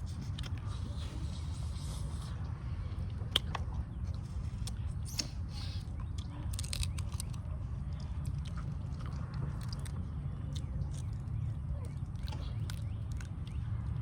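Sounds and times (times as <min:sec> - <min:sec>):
steady low rumble: 0:00.0 - 0:14.0
crab shell cracking: 0:06.5 - 0:07.4.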